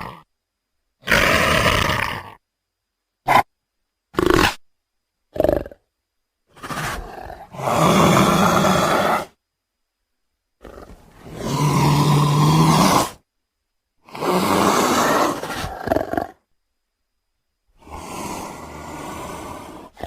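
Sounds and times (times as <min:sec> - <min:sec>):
leopard roaring: 0:06.5 - 0:09.4, 0:10.6 - 0:13.2, 0:14.1 - 0:16.4, 0:17.8 - 0:20.0.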